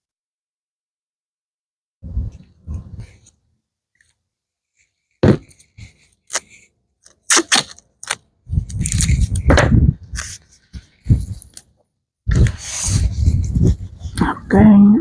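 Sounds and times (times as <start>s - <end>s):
tape scraping rustle: 5.7s - 9.5s, 10.1s - 11.7s.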